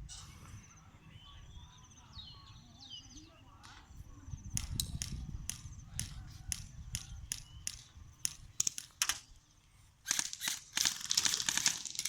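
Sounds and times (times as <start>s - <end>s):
airsoft gun shots: 10.1s - 12.0s.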